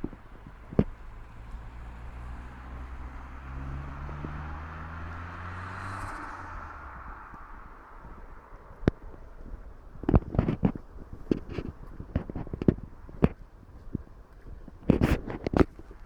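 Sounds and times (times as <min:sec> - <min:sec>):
turbo engine accelerating: 0:00.0 - 0:09.5.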